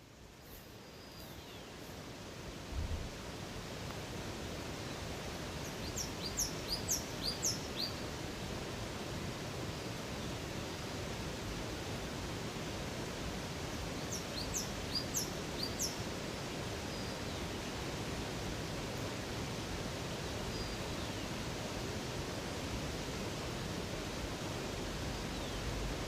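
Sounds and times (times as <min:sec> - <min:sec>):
small bird chirping: 0:05.6 - 0:08.0.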